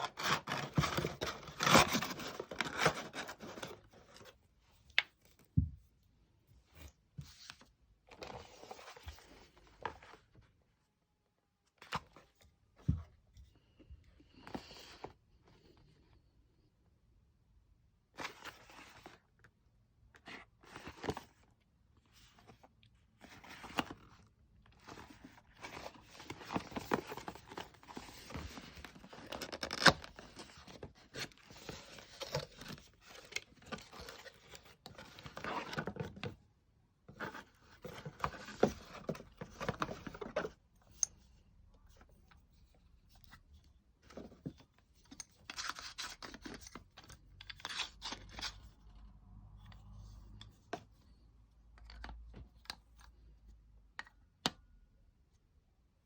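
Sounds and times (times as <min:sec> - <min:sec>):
packaging rustling and tearing: 0:25.2 - 0:36.0.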